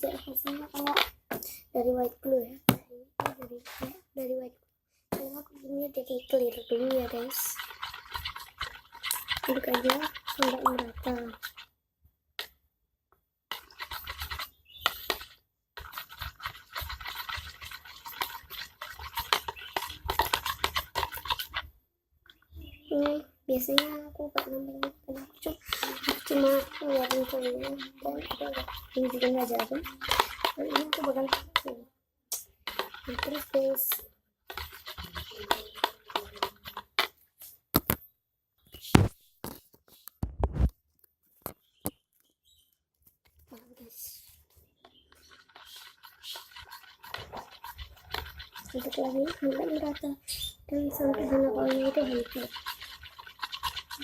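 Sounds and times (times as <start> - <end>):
utensil scraping slime in container: 0.0 - 1.2, 6.0 - 11.7, 13.5 - 21.7, 23.5 - 31.8, 32.4 - 37.2, 43.5 - 54.0.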